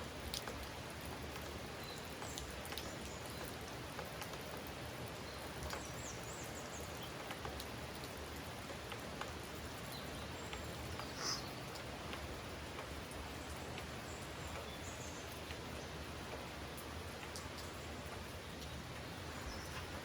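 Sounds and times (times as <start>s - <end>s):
steady rain falling: 0.0s - 20.0s.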